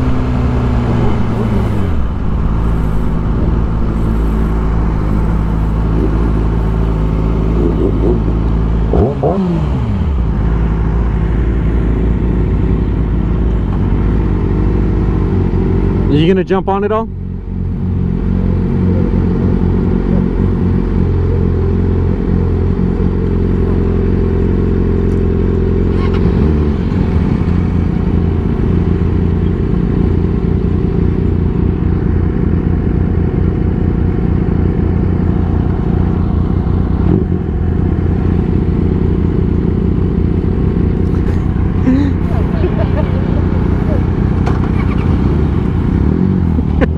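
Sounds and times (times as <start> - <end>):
motorcycle engine running: 0.0 - 46.9.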